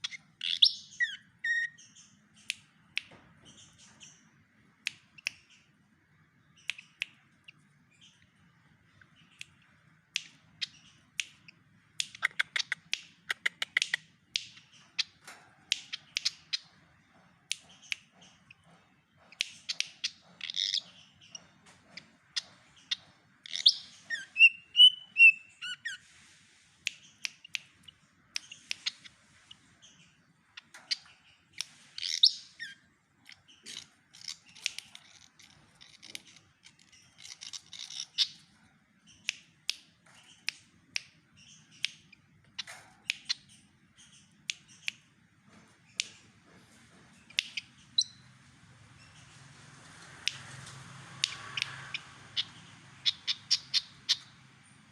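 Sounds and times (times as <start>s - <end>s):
songbird clicks and chips: 0.0s - 5.8s, 6.5s - 26.1s, 26.8s - 48.3s, 49.0s - 54.9s
bird whistled notes: 24.2s - 26.0s.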